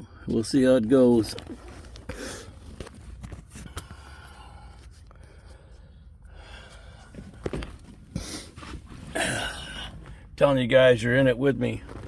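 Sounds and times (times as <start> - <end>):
faint breathing: 3.5 - 10.4.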